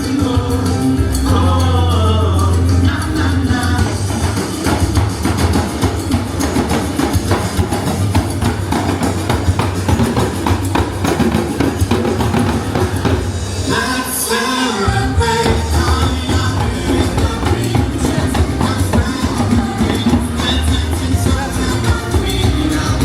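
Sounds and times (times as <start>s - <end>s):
deep bass: 0.0s - 6.5s, 14.9s - 23.0s
samba drums and percussion: 0.0s - 23.0s.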